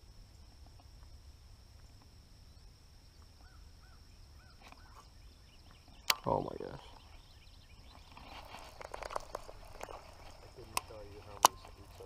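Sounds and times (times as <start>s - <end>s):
faint bird calling: 2.5s - 12.0s.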